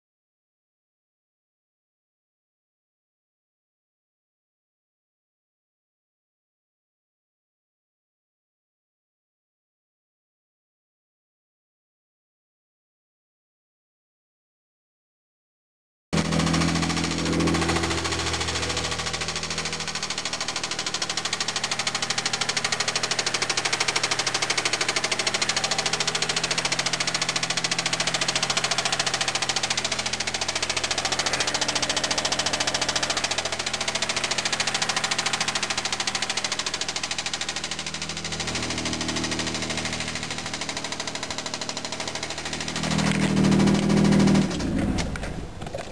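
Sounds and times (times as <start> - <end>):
car engine running: 16.2 - 45.9.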